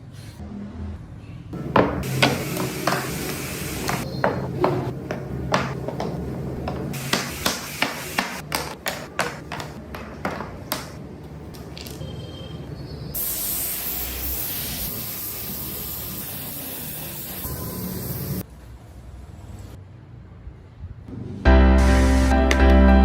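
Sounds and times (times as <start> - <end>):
mallet and chisel knocking on wood: 1.6 - 11.0
spraying hiss: 2.0 - 4.1, 6.9 - 8.4, 13.2 - 18.4.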